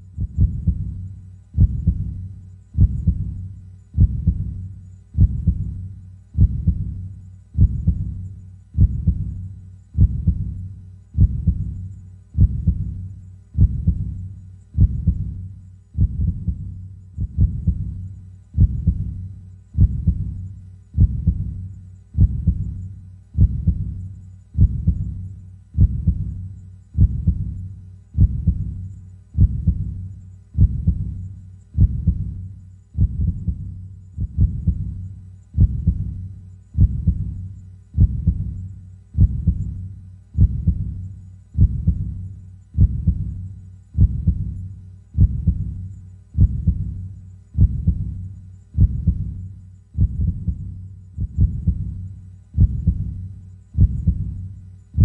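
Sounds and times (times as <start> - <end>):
heartbeat thumps: 0.0 - 55.0.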